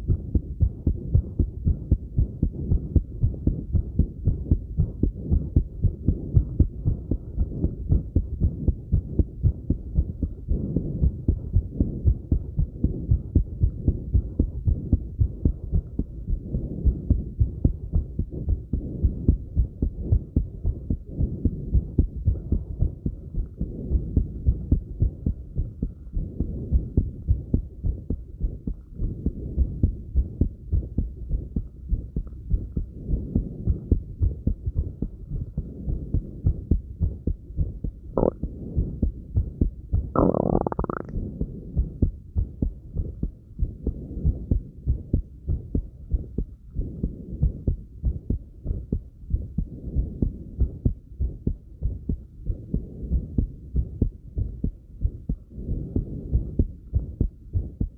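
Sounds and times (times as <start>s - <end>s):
fast heartbeat thuds: 0.0s - 57.9s.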